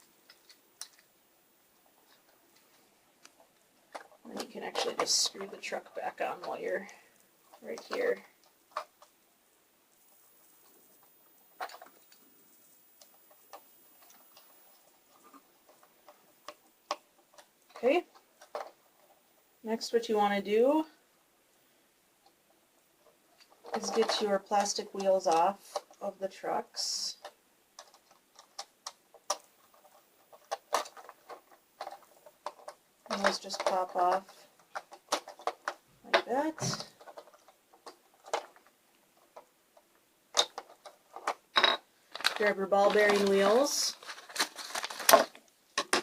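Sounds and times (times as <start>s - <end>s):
small plastic parts clicking: 27.2s - 46.0s.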